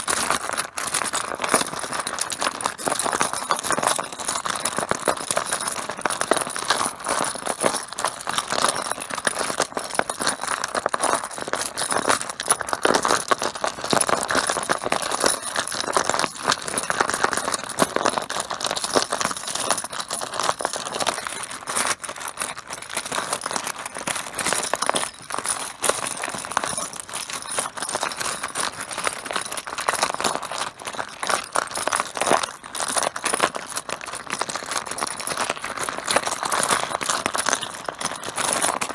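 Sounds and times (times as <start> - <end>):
mahjong tiles clattering: 11.0 - 21.4.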